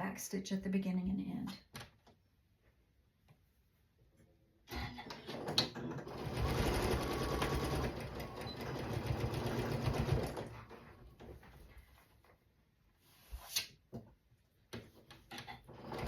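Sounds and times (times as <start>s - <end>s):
sewing machine stitching: 5.1s - 11.3s, 15.3s - 16.0s.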